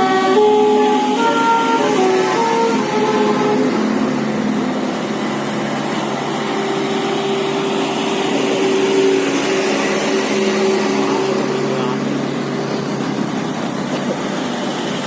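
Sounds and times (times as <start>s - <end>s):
musical truck horns: 0.0s - 11.8s
truck engines: 0.0s - 15.0s.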